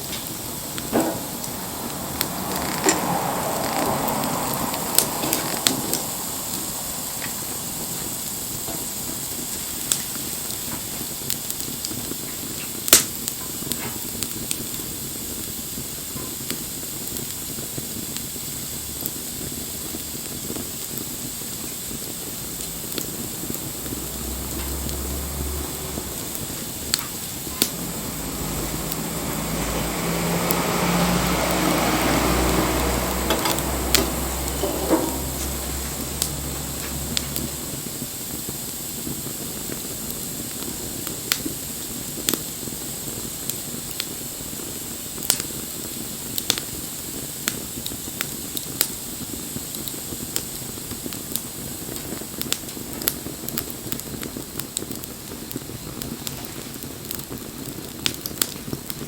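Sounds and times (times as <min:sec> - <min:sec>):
low drone: 0:00.0 - 0:09.5, 0:22.3 - 0:38.6
wood fire crackling: 0:00.0 - 0:59.0.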